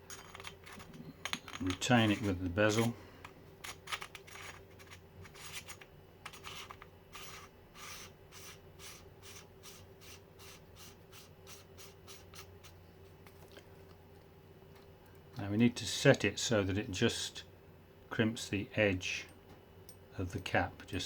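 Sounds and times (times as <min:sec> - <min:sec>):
faint metal threads scraping: 0:00.0 - 0:12.8.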